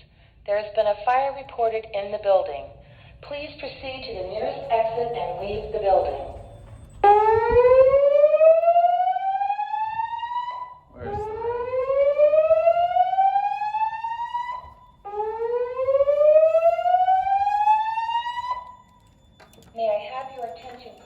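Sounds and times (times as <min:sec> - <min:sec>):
fire alarm whoop tone: 0:04.0 - 0:21.0.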